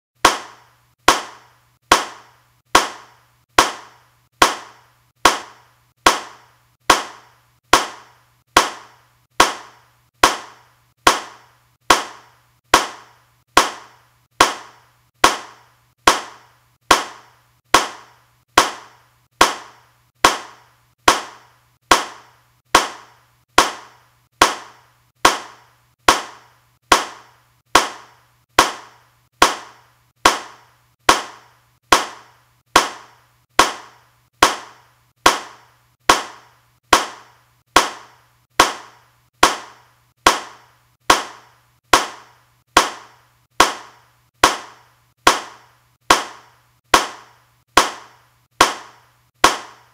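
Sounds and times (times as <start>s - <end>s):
hand clapping: 0.2s - 39.7s.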